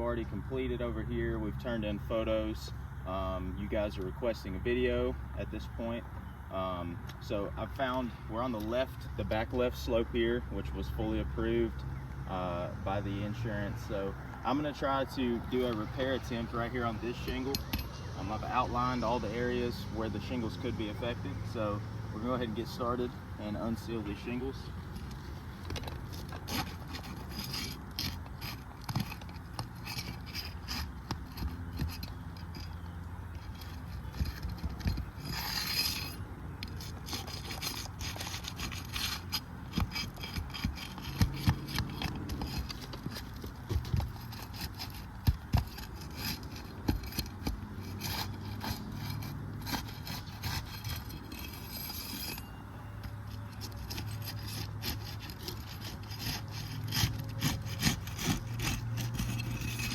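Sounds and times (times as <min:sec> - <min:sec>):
roof shingles scraping: 0:13.4 - 0:52.5, 0:53.2 - 0:59.9.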